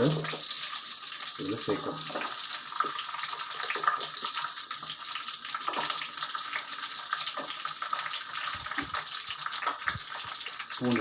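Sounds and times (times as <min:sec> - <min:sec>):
garlic sizzling in hot oil: 0:00.0 - 0:11.0.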